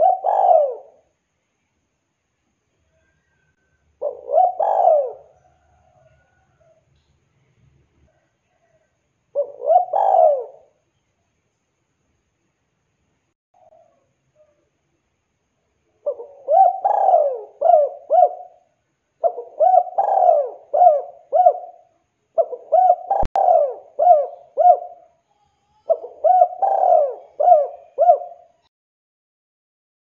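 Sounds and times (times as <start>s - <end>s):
dove cooing: 0.0s - 1.1s, 3.0s - 6.8s, 8.1s - 10.8s, 16.0s - 28.7s.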